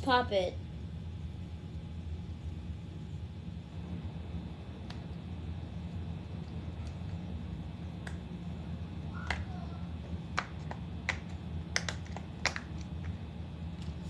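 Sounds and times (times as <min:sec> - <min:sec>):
low hum: 0:00.0 - 0:14.0
fidget toys clicking and tapping: 0:10.4 - 0:13.2.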